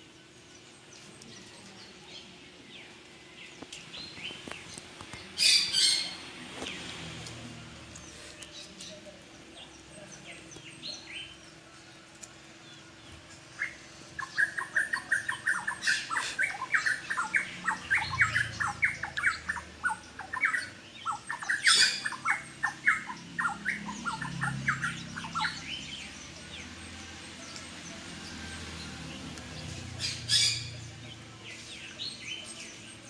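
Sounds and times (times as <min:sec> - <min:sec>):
birds chirping: 0:00.0 - 0:33.0
loud harsh bird squawk: 0:14.2 - 0:25.6.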